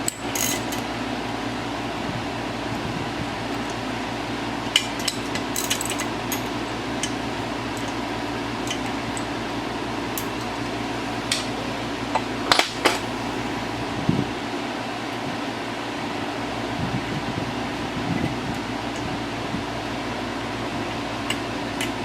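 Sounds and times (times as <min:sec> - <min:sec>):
hand tools clinking on metal: 0:00.0 - 0:00.8, 0:04.8 - 0:08.0
steady hum: 0:00.0 - 0:22.0.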